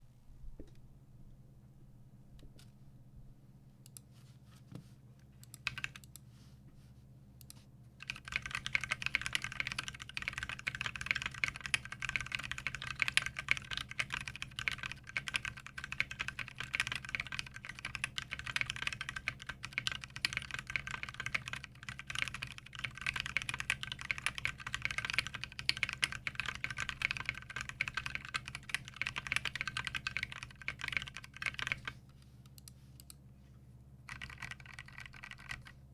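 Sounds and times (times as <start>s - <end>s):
mechanical keyboard typing: 5.4s - 6.2s, 8.0s - 32.0s, 34.1s - 35.8s.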